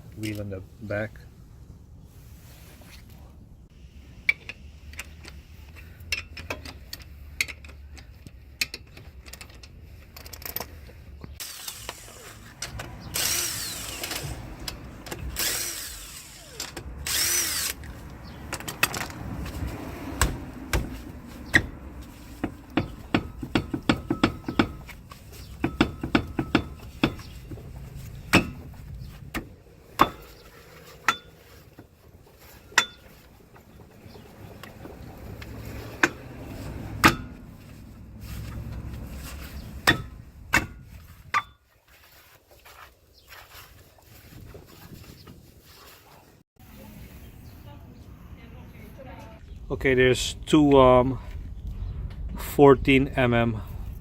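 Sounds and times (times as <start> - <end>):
metal clicks and clanks: 4.3 - 10.8, 17.7 - 19.2
power tool removing lug nuts: 11.4 - 19.3.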